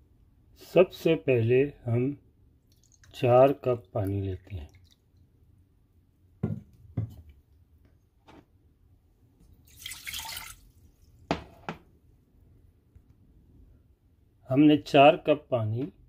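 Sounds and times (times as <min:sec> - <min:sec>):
water pouring into pot: 0:02.7 - 0:05.0, 0:09.6 - 0:10.8.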